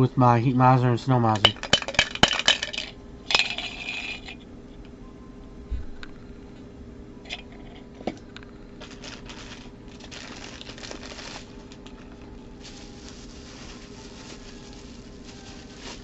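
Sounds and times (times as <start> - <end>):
plastic packaging crinkling: 8.7 - 16.0.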